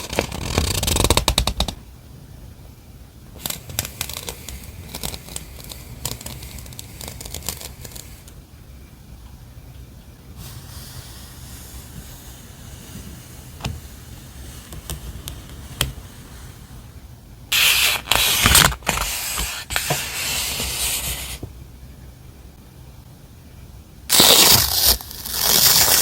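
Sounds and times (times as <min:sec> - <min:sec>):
faint hiss: 0:02.0 - 0:26.0
rustling of wrapping: 0:24.1 - 0:26.0.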